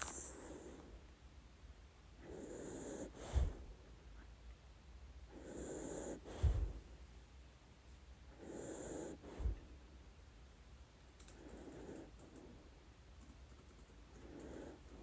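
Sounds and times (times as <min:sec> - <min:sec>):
dog snoring softly: 0:02.2 - 0:03.8, 0:05.3 - 0:06.9, 0:08.3 - 0:09.8, 0:11.3 - 0:12.8, 0:14.1 - 0:15.0.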